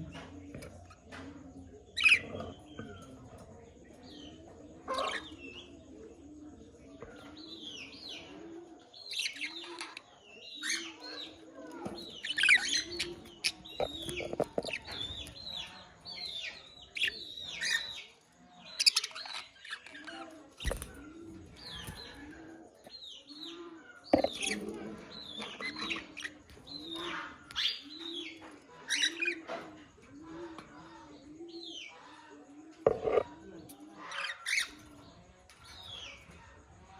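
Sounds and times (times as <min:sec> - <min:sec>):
budgerigars chirping and warbling: 0:01.9 - 0:05.8, 0:09.0 - 0:29.6, 0:32.9 - 0:36.3.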